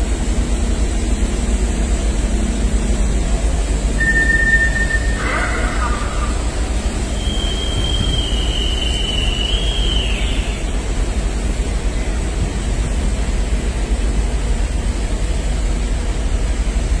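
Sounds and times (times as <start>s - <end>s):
low rushing rumble: 0.0s - 17.0s
high whistle-like tone: 4.0s - 6.4s, 7.1s - 10.7s.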